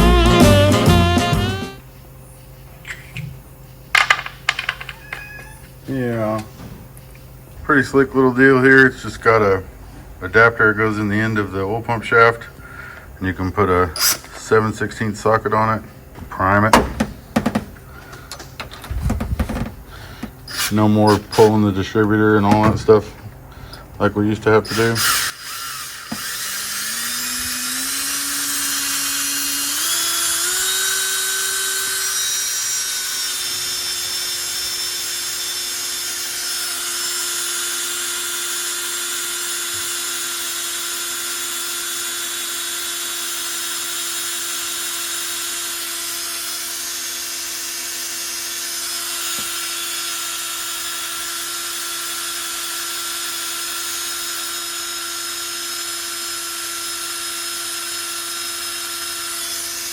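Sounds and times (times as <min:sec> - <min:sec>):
power drill whine: 0:18.0 - 0:21.7, 0:24.4 - 0:59.9.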